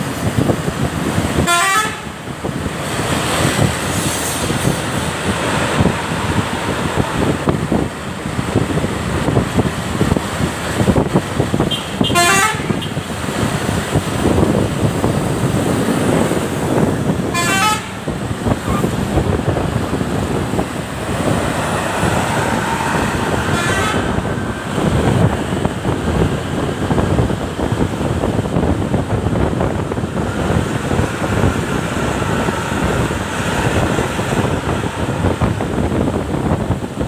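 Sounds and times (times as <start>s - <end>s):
bus engine and road noise: 0.0s - 37.0s.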